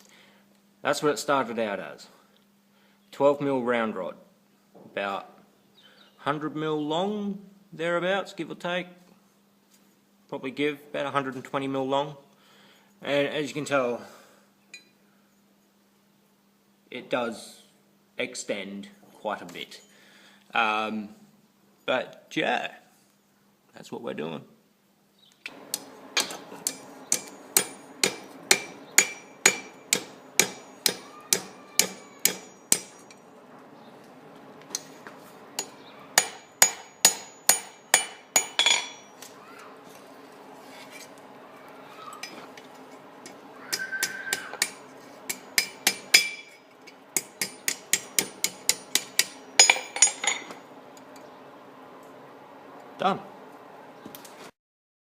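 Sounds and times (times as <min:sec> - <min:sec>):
hammer striking steel on anvil: 0:25.7 - 0:33.2, 0:35.6 - 0:39.2, 0:43.2 - 0:50.6.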